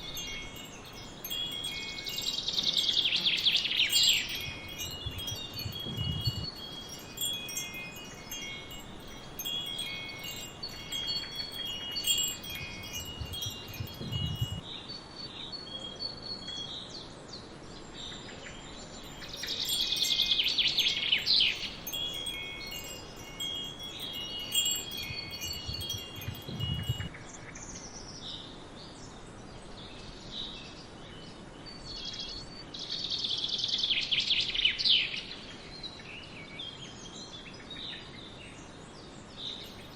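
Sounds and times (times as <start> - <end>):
birds chirping faintly: 0.0 - 14.6, 18.5 - 27.1
wind chimes ringing: 0.0 - 14.6, 19.0 - 27.2, 39.6 - 39.9.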